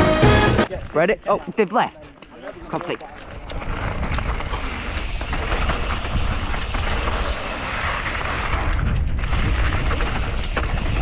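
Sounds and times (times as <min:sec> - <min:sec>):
bike rattling over trail: 0:00.7 - 0:11.0
wind buffeting microphone: 0:02.6 - 0:11.0.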